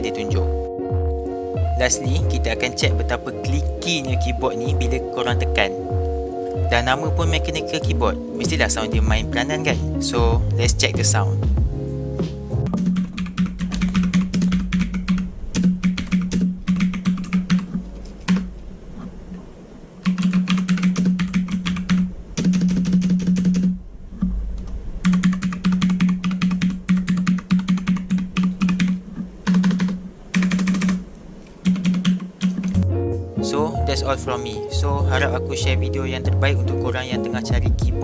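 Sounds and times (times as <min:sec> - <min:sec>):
clicky keyboard typing: 0:12.7 - 0:18.5, 0:20.0 - 0:23.7, 0:25.0 - 0:31.0, 0:31.6 - 0:32.8.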